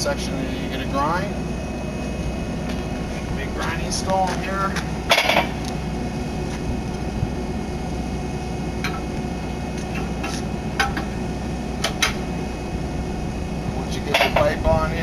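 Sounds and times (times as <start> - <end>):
low machinery hum: 0.0 - 15.0.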